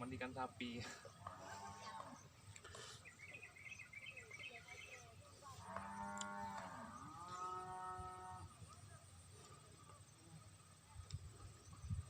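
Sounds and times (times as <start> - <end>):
cow mooing: 5.6 - 8.5.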